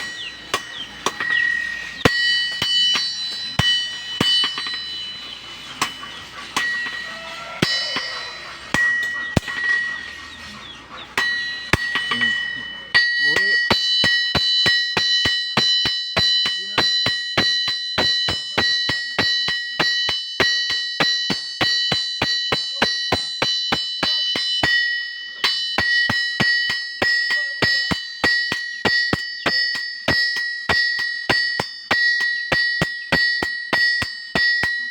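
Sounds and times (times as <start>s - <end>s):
hammer striking metal anvil: 0.0s - 34.9s.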